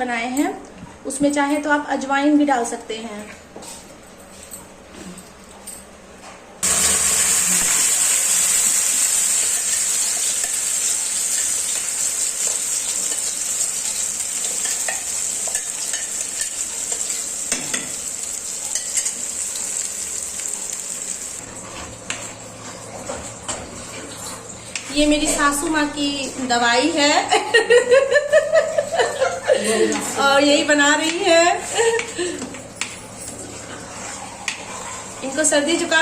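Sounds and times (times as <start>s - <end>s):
paste sizzling in hot oil: 6.6s - 21.4s.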